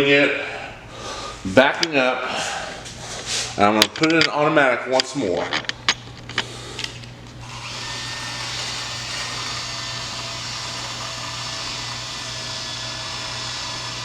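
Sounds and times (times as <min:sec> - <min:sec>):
small electric motors whirring: 0:07.4 - 0:14.0.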